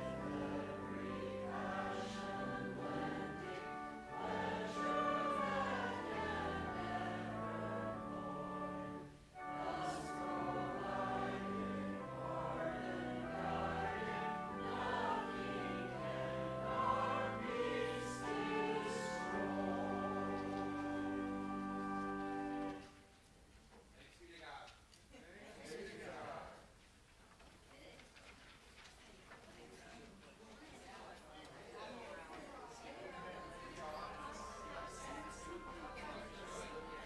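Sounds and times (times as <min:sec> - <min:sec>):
congregation singing a hymn: 0:00.0 - 0:23.0, 0:32.7 - 0:37.0
organ accompaniment: 0:00.0 - 0:23.1, 0:33.0 - 0:37.0.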